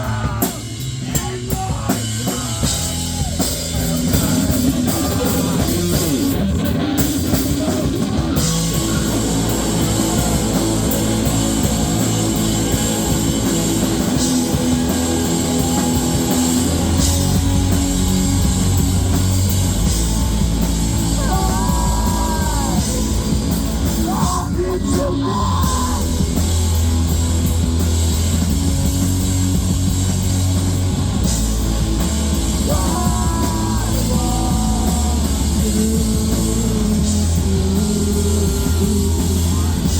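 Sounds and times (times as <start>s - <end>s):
drums: 0.0s - 39.9s
electric guitar: 0.0s - 39.9s
live rock band playing: 0.0s - 39.9s.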